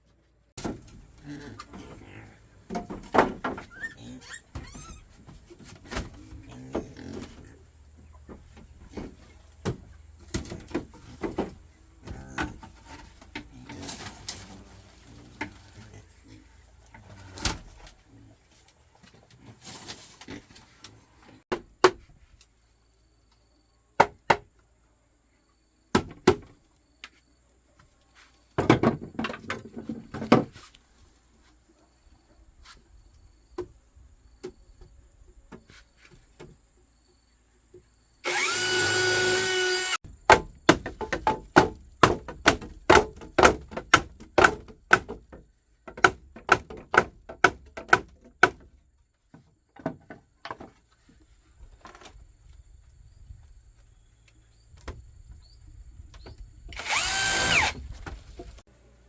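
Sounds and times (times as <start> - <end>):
tool strikes on wood: 24.0 - 24.5, 39.6 - 48.7.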